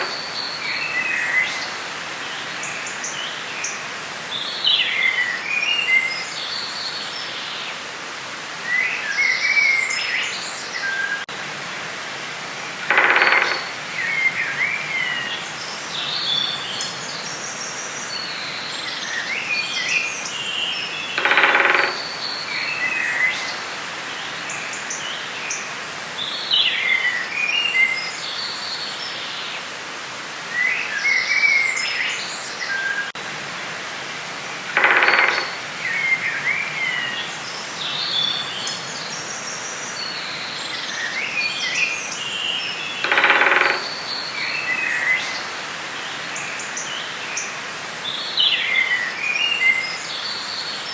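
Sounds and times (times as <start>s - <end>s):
louder lower bird calls: 0.0s - 1.7s, 12.8s - 15.2s, 21.1s - 23.6s, 34.7s - 37.3s, 43.0s - 45.4s
steady hiss: 0.0s - 10.6s.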